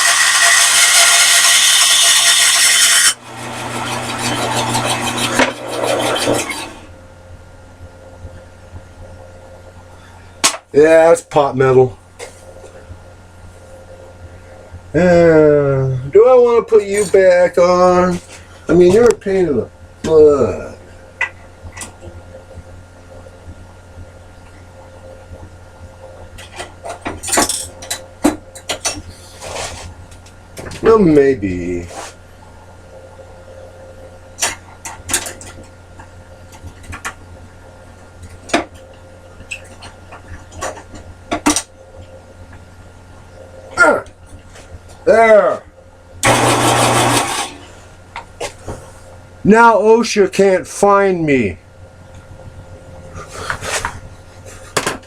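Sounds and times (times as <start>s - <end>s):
bandsaw rasping through metal: 0.0s - 6.9s
bandsaw humming: 0.0s - 7.0s, 46.2s - 47.8s
low steady hum: 3.1s - 55.0s.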